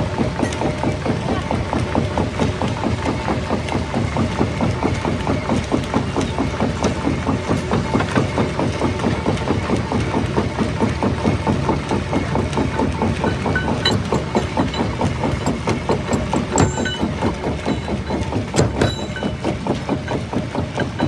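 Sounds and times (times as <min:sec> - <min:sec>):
rock crusher pulsing: 0:10.2 - 0:21.0.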